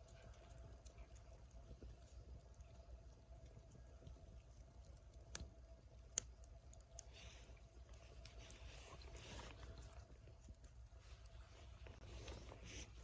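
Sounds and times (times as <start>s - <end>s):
faint steady hum: 0.0s - 13.0s
fire hissing: 0.0s - 13.0s
small wood fire crackling: 0.0s - 13.0s.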